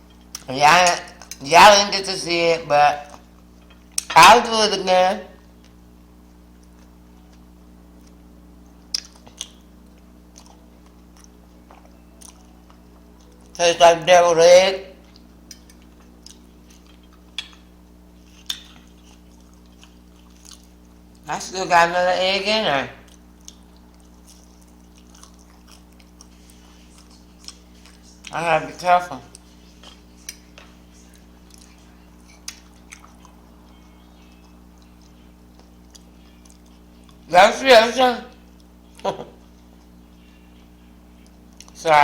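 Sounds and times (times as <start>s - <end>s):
person chewing: 0.0s - 1.4s, 6.6s - 13.6s, 15.0s - 21.2s, 23.0s - 28.4s, 29.2s - 37.3s, 38.4s - 41.8s
faint eating ticks: 0.0s - 1.8s, 5.3s - 14.1s, 14.9s - 21.3s, 23.0s - 37.3s, 38.3s - 41.9s
steady low hum: 0.0s - 42.0s.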